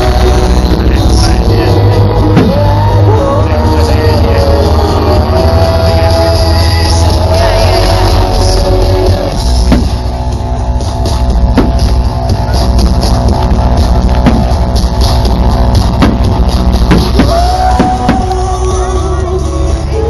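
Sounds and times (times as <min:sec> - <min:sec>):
loud rock music: 0:00.0 - 0:20.0
sharp bangs: 0:09.5 - 0:10.3, 0:10.9 - 0:18.4.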